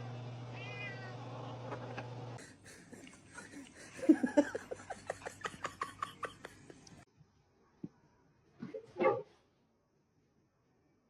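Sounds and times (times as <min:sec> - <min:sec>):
cat meowing: 0:00.6 - 0:01.2.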